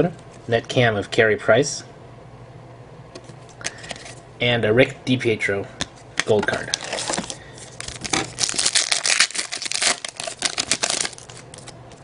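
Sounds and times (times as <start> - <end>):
wrapper crinkling and tearing: 6.7 - 11.8.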